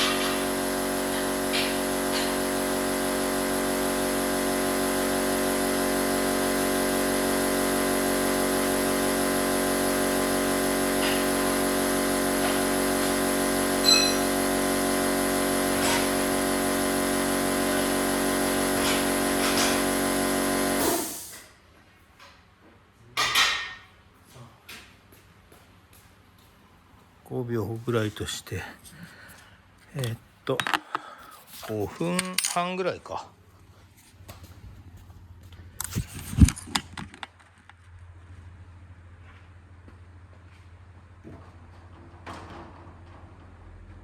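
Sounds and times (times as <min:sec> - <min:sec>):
air compressor running: 0:00.0 - 0:21.5.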